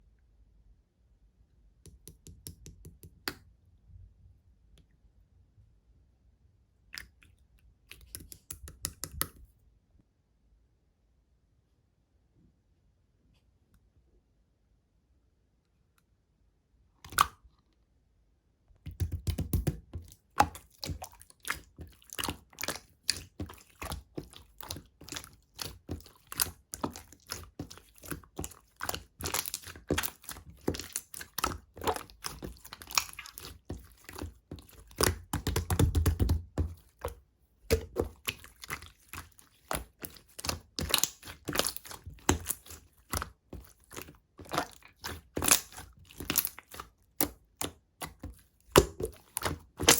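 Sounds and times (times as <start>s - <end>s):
slime wet clicks and pops: 17.0s - 17.4s
slime squelching thuds: 18.8s - 49.9s.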